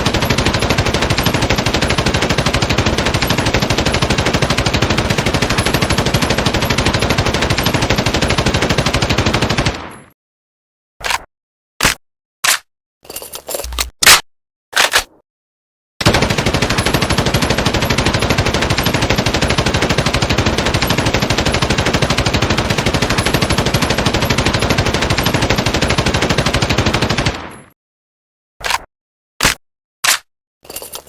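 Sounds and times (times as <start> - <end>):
machine gun automatic burst: 0.0 - 10.0, 16.0 - 27.6
machine gun single shots: 16.0 - 27.7.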